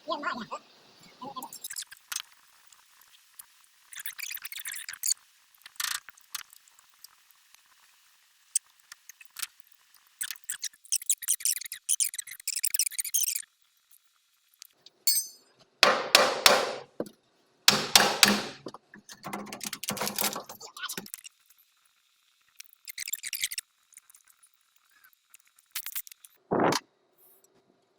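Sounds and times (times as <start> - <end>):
metal tools clinking and scraping: 15.0 - 15.4, 18.5 - 20.6.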